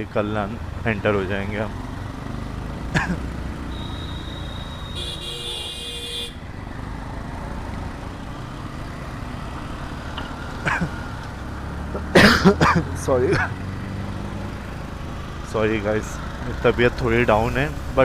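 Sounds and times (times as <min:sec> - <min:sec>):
road and wind rumble: 0:00.0 - 0:18.0
vehicle horn: 0:03.6 - 0:06.4.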